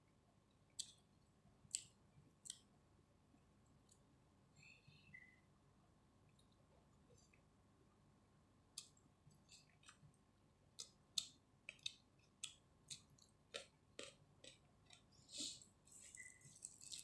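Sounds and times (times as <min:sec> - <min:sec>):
chewing mouth clicks and smacks: 0:10.8 - 0:15.1.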